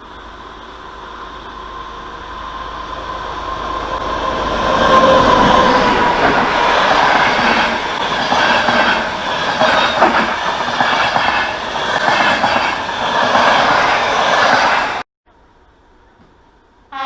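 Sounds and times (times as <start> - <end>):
steel wheels squealing on rail: 0.0 - 15.0
train wheels clattering over rails: 4.8 - 15.0.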